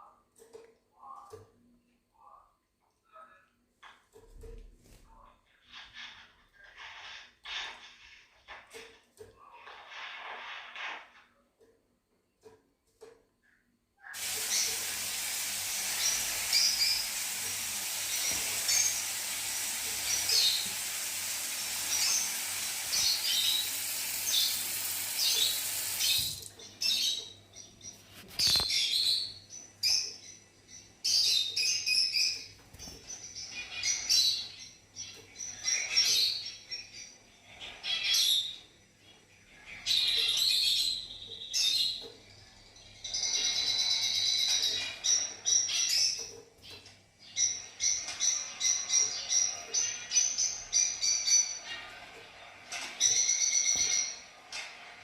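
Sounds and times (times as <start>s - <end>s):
lovebirds chirping: 14.1s - 38.2s
steady hiss: 14.2s - 26.5s.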